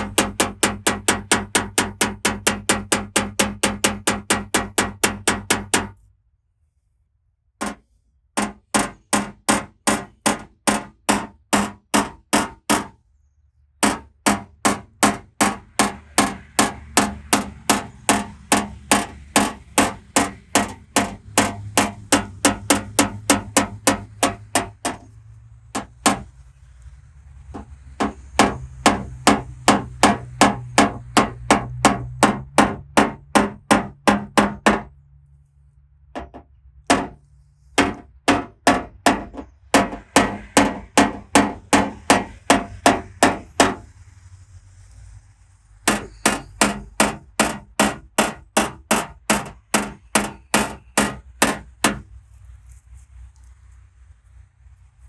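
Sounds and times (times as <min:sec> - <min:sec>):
light hammer taps on sheet metal: 0:07.6 - 0:07.8.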